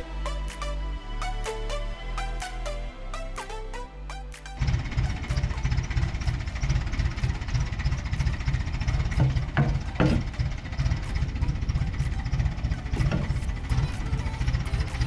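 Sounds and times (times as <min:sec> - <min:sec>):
bulldozer diesel engine throbbing: 0:04.6 - 0:14.7.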